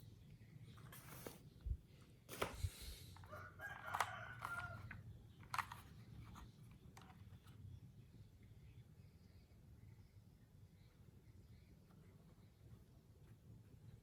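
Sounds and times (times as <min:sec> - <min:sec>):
distant rooster crowing: 0:03.2 - 0:05.1.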